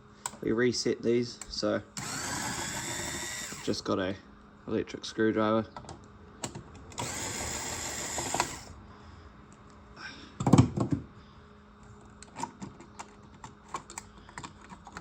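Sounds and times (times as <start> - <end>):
electric screwdriver whirring: 2.0 - 3.7, 7.0 - 8.7.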